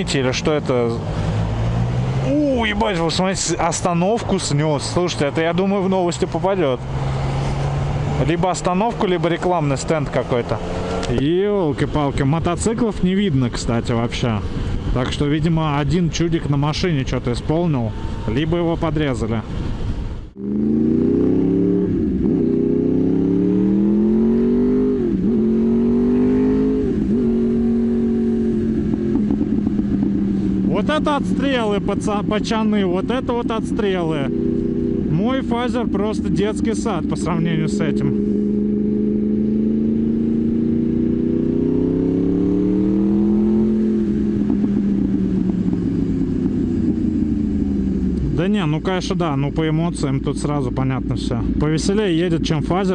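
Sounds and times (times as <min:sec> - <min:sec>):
motorcycle engine accelerating: 0:05.7 - 0:11.6, 0:20.3 - 0:48.9.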